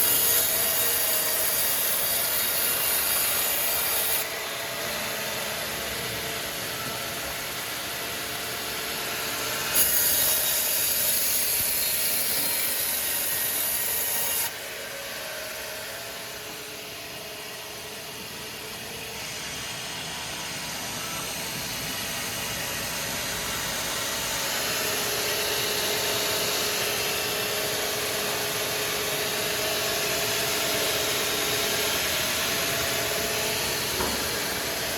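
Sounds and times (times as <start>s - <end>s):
saw cutting through timber: 0.0s - 16.9s, 21.2s - 34.9s.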